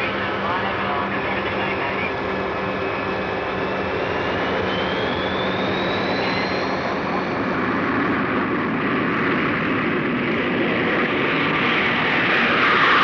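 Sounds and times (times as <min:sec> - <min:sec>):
thin rising whine: 0:00.0 - 0:08.5
aircraft engines roaring: 0:00.0 - 0:13.0.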